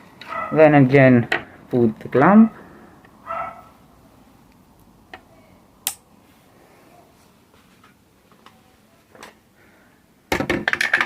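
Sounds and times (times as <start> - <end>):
sharp click: 5.8 - 6.0.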